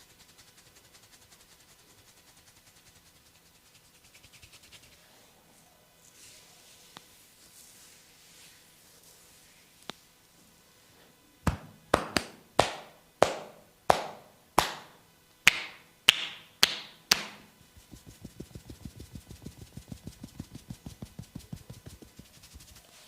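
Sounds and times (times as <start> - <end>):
hands slapping body: 11.5 - 22.3.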